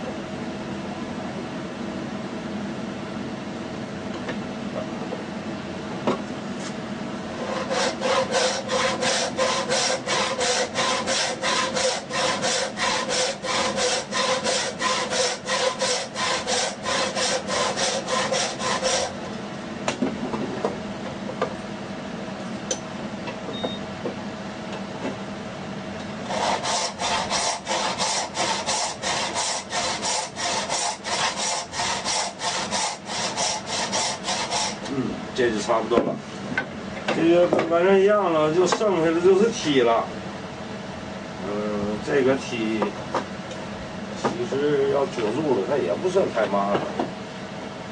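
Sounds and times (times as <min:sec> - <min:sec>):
hand saw cutting wood: 0:07.4 - 0:19.2, 0:26.3 - 0:34.9.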